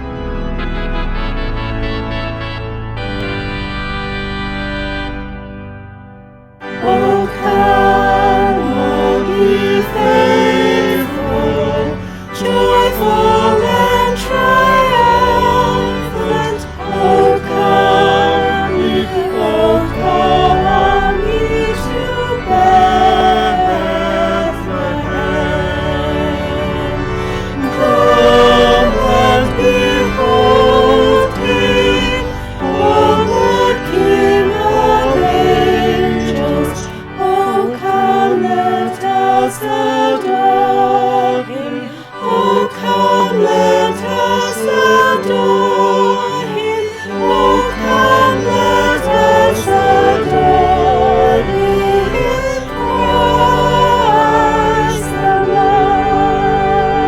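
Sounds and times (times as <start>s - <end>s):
bass: 0.0s - 42.2s, 44.0s - 57.0s
instrumental accompaniment: 0.0s - 57.0s
voices singing with vibrato: 6.7s - 57.0s.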